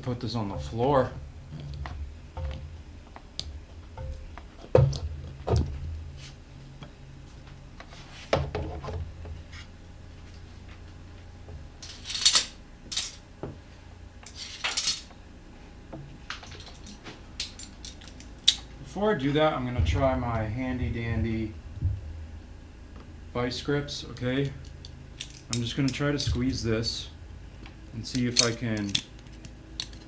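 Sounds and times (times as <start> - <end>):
metal hand tools clattering: 0.0 - 6.4, 11.5 - 13.3, 14.2 - 15.2, 16.3 - 30.0.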